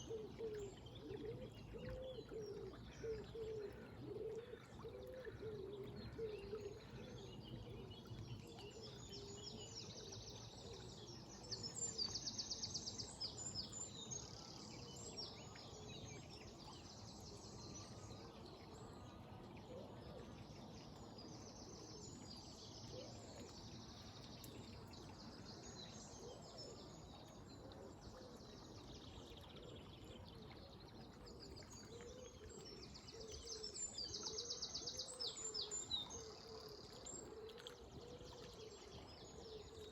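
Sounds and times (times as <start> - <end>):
flowing river water: 0.0 - 39.9
songbirds singing: 0.0 - 39.9.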